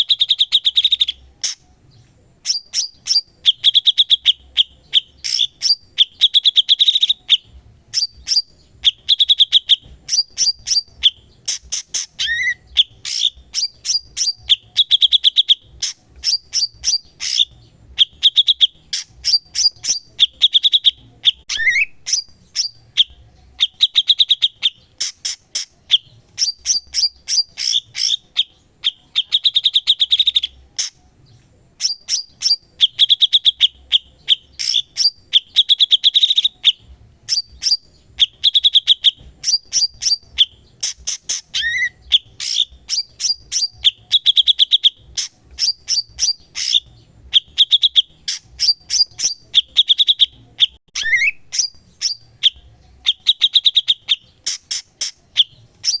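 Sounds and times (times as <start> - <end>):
bird singing chips and trills: 0.0 - 56.0.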